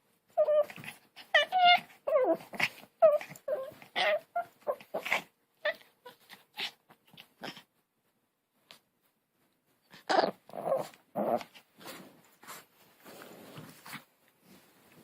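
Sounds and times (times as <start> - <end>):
dog whining and yowling: 0.3 - 6.8, 10.0 - 11.5.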